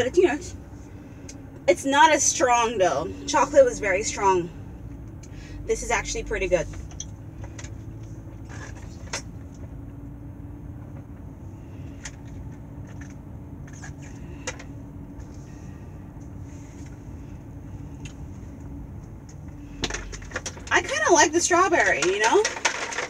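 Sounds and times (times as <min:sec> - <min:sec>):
car interior rumble: 0:00.0 - 0:23.0.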